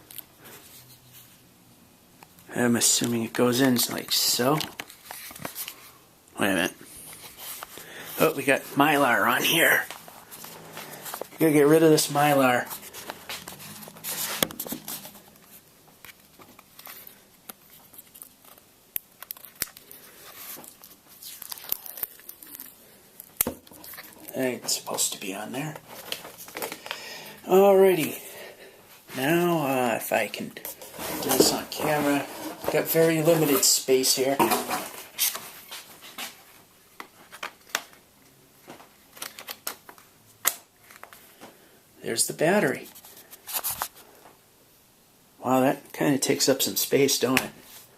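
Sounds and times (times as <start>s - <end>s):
plastic film crinkling: 7.2s - 27.1s.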